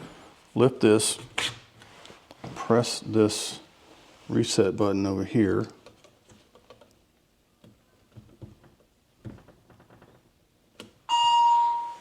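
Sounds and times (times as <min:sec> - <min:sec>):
faint clicks and handling: 0:05.6 - 0:11.0.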